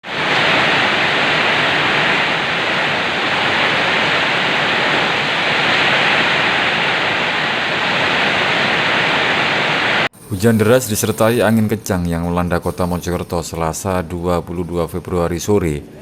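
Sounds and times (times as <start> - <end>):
heavy rain: 0.0 - 10.1.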